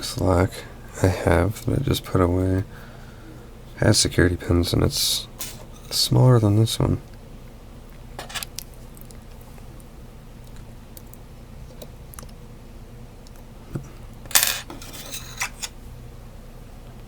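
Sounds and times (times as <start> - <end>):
metal tools clinking: 14.3 - 15.7.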